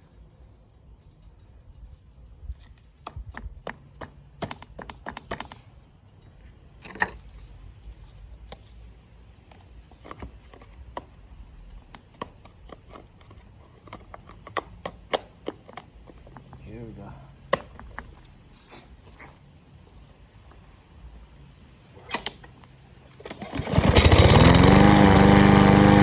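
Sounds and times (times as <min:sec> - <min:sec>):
hand tools clicking and knocking: 0:02.6 - 0:18.4.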